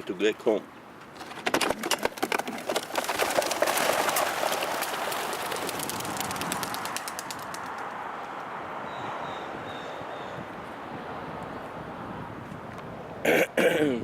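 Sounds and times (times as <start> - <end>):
pigeon wing claps: 1.3 - 7.9
rush of wingbeats: 1.4 - 8.1.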